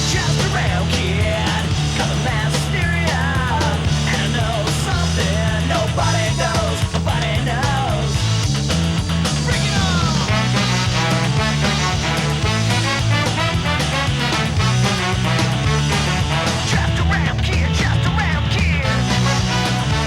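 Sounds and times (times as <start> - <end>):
person singing: 0.0 - 8.1, 15.3 - 20.0
loud rock music: 0.0 - 20.0.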